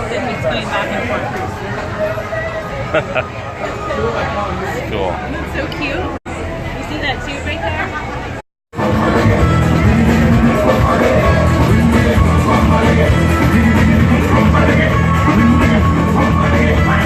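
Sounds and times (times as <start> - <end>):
rock music with electric guitar: 8.8 - 17.0.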